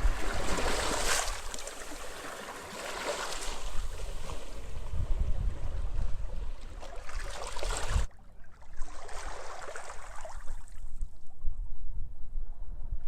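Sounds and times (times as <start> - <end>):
wind rumbling on microphone: 0.0 - 2.1, 3.4 - 13.0
sea waves washing on beach: 0.0 - 8.1.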